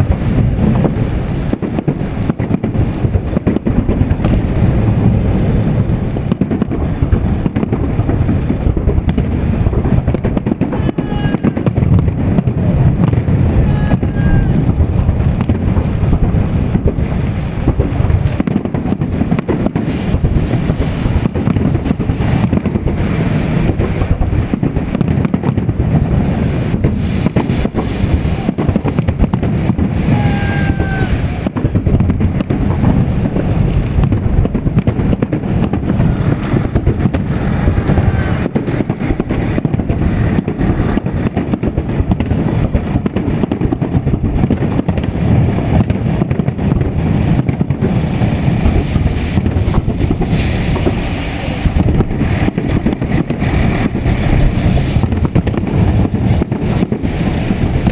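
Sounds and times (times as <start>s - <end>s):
fireworks bangs and crackles: 0.0s - 57.9s
high-pitched fireworks whistles: 10.6s - 11.8s, 13.5s - 14.7s, 27.1s - 31.8s, 35.9s - 41.0s.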